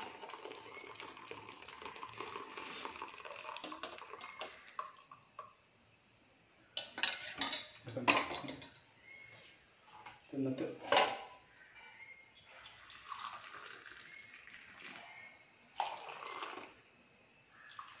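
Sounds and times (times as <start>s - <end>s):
tea pouring through a strainer: 0.0s - 5.6s, 12.5s - 16.8s, 17.6s - 18.0s
strainer and pot clattering: 6.8s - 8.7s.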